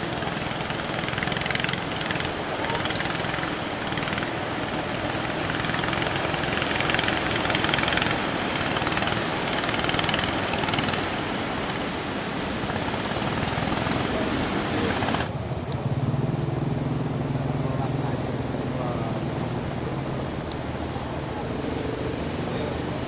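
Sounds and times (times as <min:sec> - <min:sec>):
loud rushing hiss: 0:00.0 - 0:15.3
boat engine running: 0:00.0 - 0:23.0.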